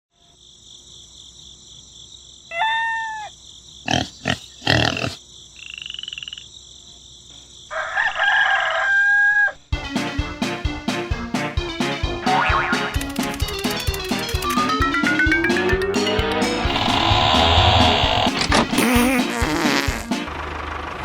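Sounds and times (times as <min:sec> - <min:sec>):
frogs chorus: 0:01.2 - 0:08.1
rooster crowing: 0:07.7 - 0:09.6
upbeat music: 0:12.2 - 0:18.0.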